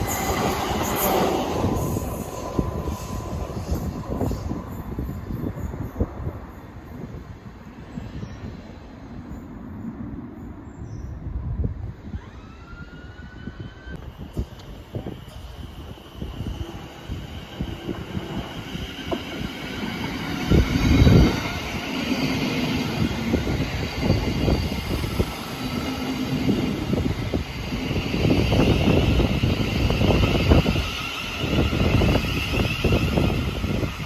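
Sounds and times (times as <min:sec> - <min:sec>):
train rumbling on tracks: 0:00.0 - 0:34.0.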